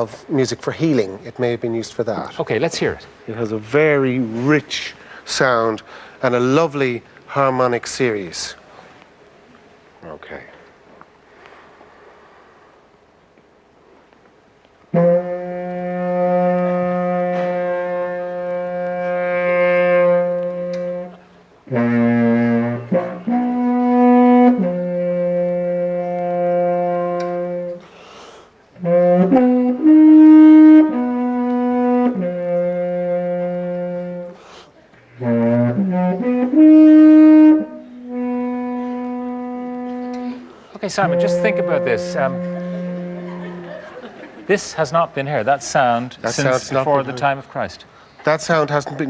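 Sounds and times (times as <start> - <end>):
horn playing long held notes: 14.9 - 27.9, 28.8 - 34.4, 35.1 - 44.0.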